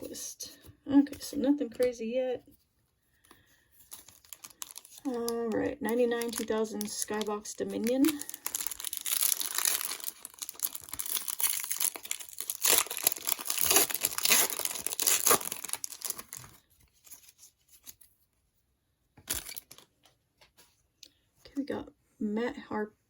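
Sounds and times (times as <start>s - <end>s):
faint handling sounds: 0.0s - 21.4s
wrapper tearing and crinkling: 3.9s - 17.9s, 19.2s - 19.9s.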